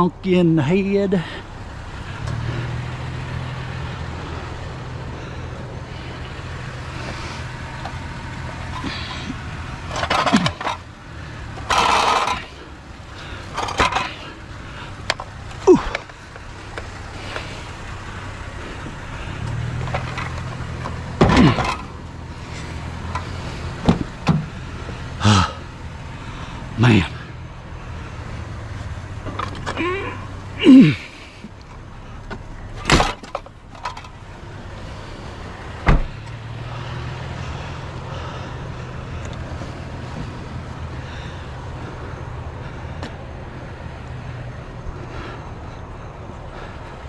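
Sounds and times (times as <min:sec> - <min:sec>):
vehicle engine idling: 0:00.0 - 0:47.0
scrap metal knocks and clanks: 0:08.6 - 0:10.9, 0:19.5 - 0:22.0.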